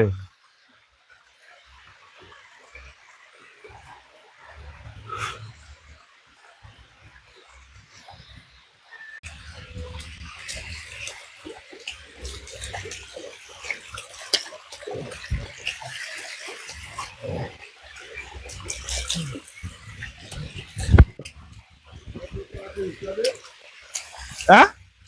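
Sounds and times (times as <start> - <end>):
water splashing over rock: 9.2 - 24.8.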